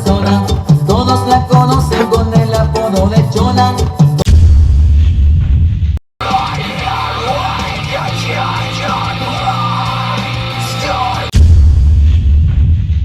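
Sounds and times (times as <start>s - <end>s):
loud rock music: 0.0s - 4.4s, 6.2s - 11.6s.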